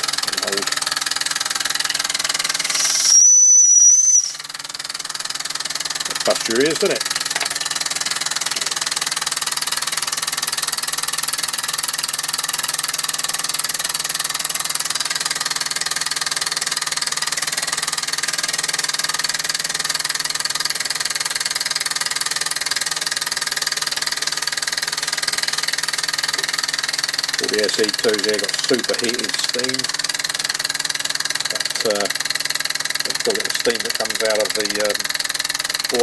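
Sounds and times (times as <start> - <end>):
steam engine hiss and exhaust beats: 2.4 - 4.5.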